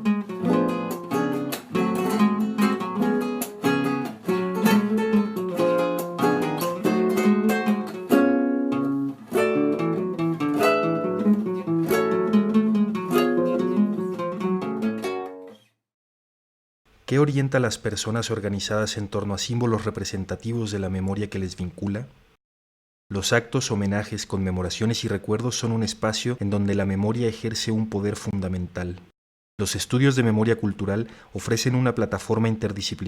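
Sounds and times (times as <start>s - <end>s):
acoustic guitar strumming chords: 0.0s - 15.6s.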